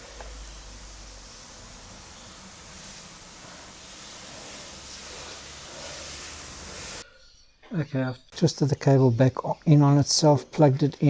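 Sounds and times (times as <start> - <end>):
low background hiss: 0.0 - 7.0.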